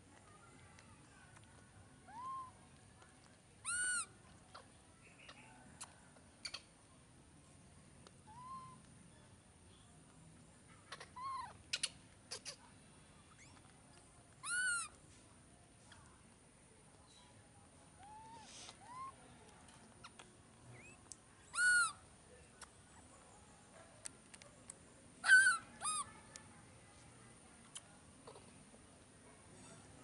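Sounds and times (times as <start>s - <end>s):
baby monkey crying: 2.1s - 2.5s, 3.6s - 4.1s, 8.3s - 8.8s, 10.9s - 12.6s, 14.4s - 15.0s, 18.0s - 19.2s, 20.8s - 22.0s, 25.2s - 26.1s.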